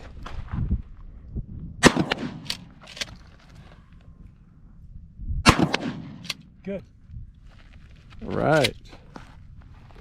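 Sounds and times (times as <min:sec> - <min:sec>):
shotgun shots: 0:01.8 - 0:02.9, 0:05.4 - 0:06.6.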